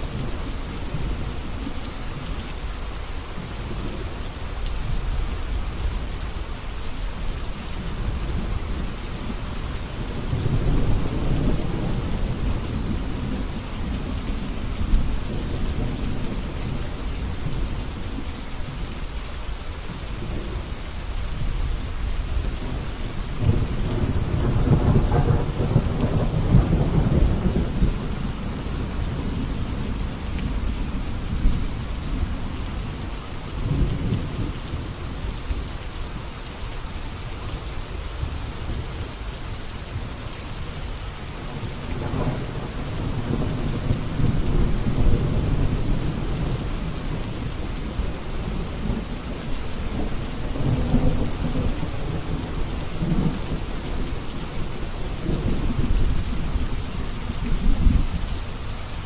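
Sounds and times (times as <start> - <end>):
heavy rain: 0.0 - 59.0
thunder rumbling: 22.4 - 33.0, 41.4 - 58.2.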